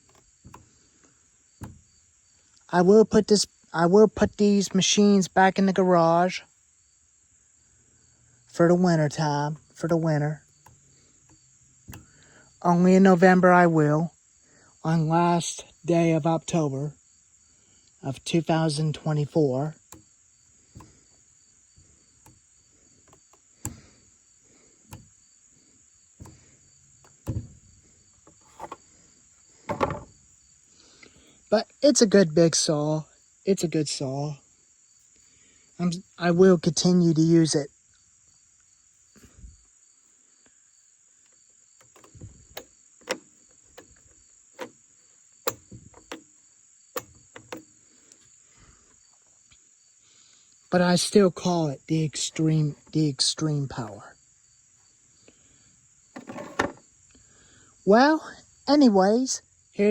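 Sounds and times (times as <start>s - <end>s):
short knocks and thumps: 0.0s - 0.7s, 1.6s - 1.9s, 26.2s - 28.8s, 29.6s - 30.2s, 56.2s - 56.8s
insects trilling: 0.0s - 59.9s.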